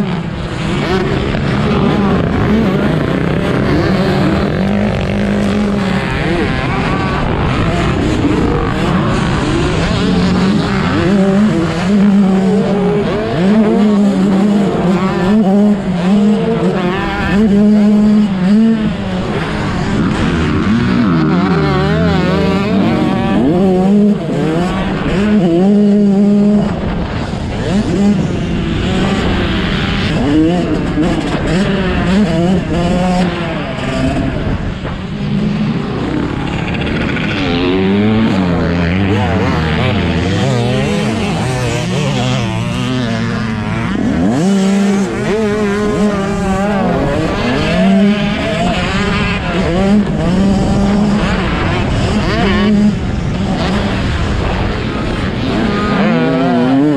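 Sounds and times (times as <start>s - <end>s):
dirt bike engines revving: 0.0s - 56.9s.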